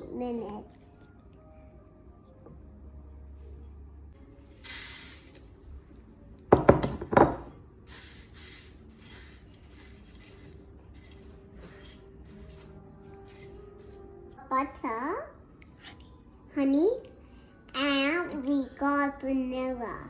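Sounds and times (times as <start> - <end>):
short hiss: 4.3 - 5.5, 7.9 - 11.1.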